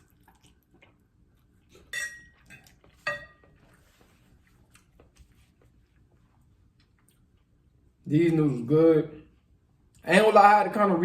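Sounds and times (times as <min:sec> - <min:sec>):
utensil clinking against a dish: 0:01.8 - 0:03.6.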